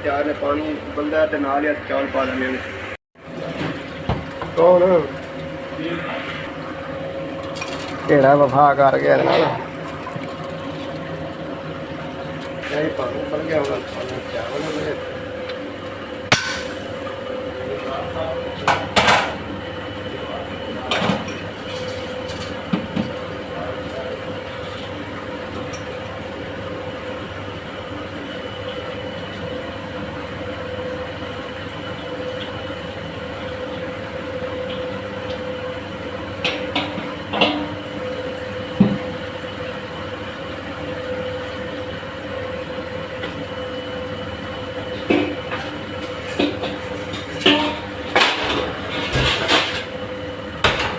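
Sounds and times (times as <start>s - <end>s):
faint constant hum: 0.0s - 50.9s
pot boiling hard: 2.7s - 50.9s
metal clanks of pot: 16.3s - 17.1s, 36.5s - 37.8s, 46.3s - 49.9s.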